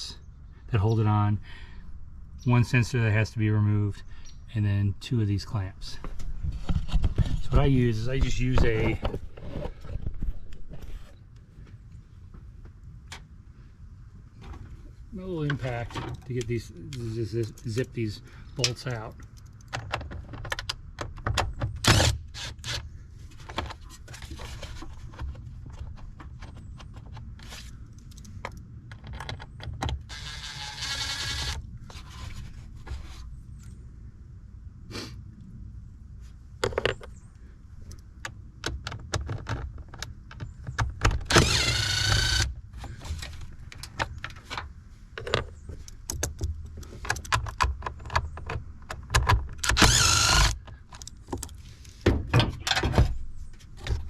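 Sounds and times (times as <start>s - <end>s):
impact driver motor whine: 30.1s - 31.6s, 41.3s - 42.5s, 49.7s - 50.6s.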